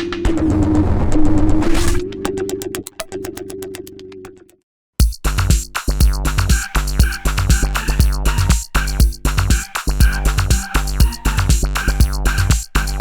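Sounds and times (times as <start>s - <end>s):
drum-machine beat: 5.0s - 13.0s
synth bass line and chords: 5.0s - 13.0s
synth tone with fast ticking: 5.3s - 13.0s.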